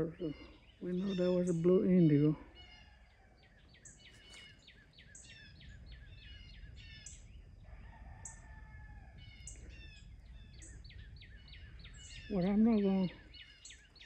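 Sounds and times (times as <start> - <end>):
faint bird chirping: 0.0 - 14.0
distant rooster crowing: 2.5 - 3.7, 6.8 - 10.1.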